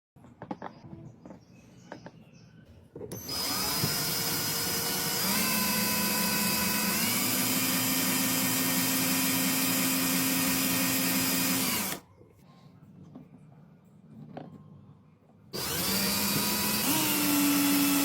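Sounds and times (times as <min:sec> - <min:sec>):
small motor whining: 0:03.1 - 0:12.0, 0:15.6 - 0:18.0.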